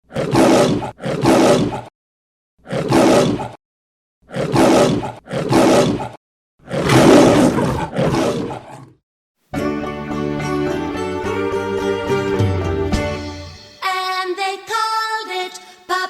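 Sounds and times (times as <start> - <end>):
rough animal roars: 0.0 - 1.9, 2.6 - 3.6, 4.2 - 9.0
music: 9.5 - 16.0.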